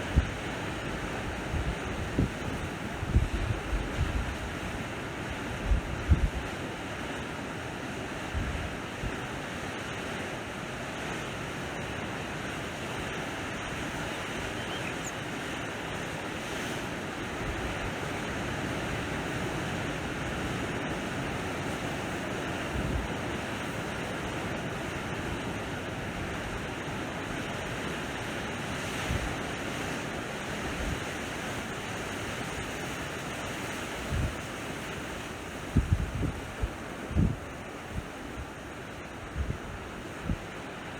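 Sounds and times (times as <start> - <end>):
wind buffeting microphone: 0.0 - 4.8, 5.6 - 6.4, 33.9 - 38.6, 39.2 - 40.5
sea waves washing on shore: 0.0 - 40.9.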